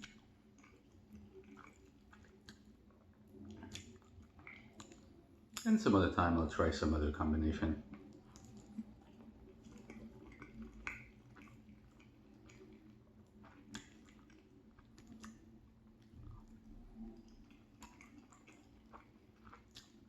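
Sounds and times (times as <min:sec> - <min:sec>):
faint chewing with mouth clicks: 0:00.0 - 0:06.4, 0:07.6 - 0:20.0
wet mouth smacks: 0:09.7 - 0:11.6.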